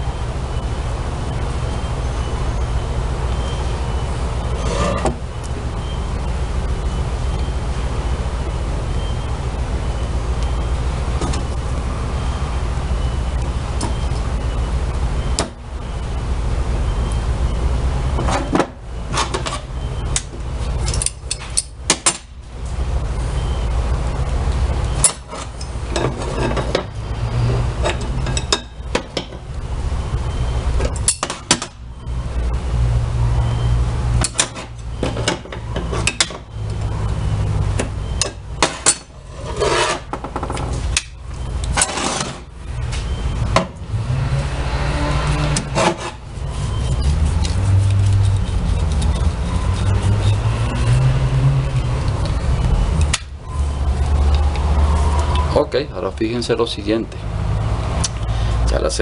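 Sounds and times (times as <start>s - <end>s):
metal parts clinking and scraping: 20.8s - 22.2s, 25.0s - 26.9s, 38.2s - 41.0s, 41.6s - 42.5s, 45.6s - 51.0s.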